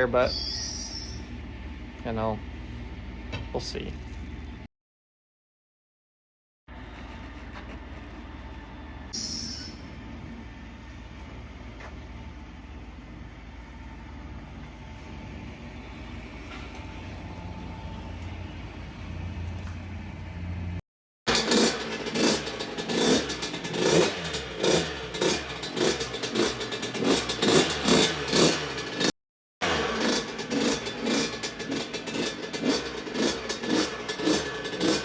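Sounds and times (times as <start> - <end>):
dirt bike engine revving: 21.3 - 35.0.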